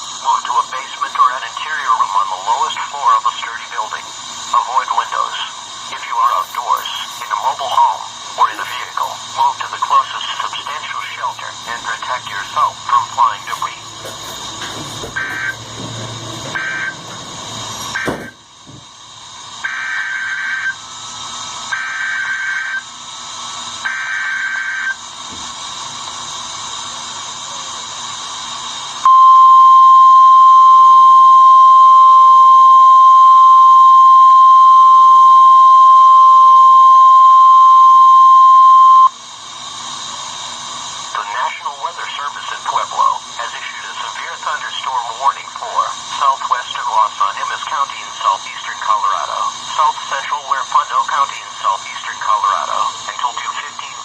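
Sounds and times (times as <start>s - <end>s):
loud warning alarm tone: 0.2s - 25.2s, 29.0s - 39.2s.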